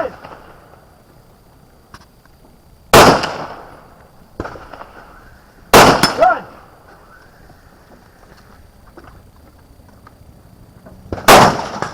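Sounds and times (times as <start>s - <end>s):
rifle shot echoing: 2.9s - 3.8s, 5.7s - 6.7s, 11.1s - 11.9s.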